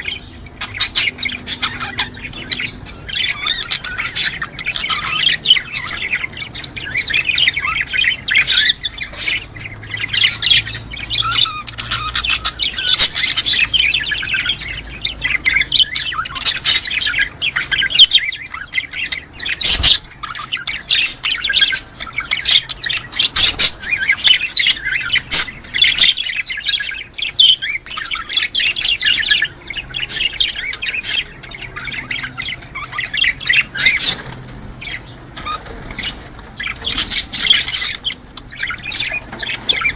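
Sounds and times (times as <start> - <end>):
cage birds chirping: 0.0 - 39.9.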